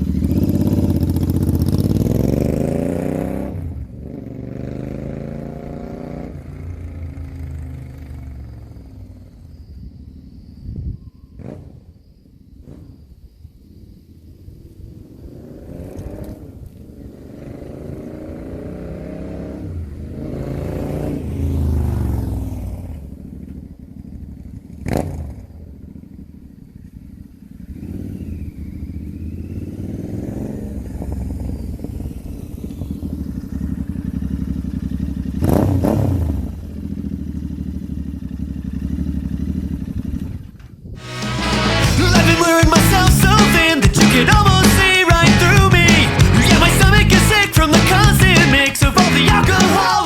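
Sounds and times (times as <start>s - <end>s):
motorcycle engine revving: 0.0s - 9.3s, 14.6s - 50.0s
sharp exhaust crack: 41.0s - 50.0s.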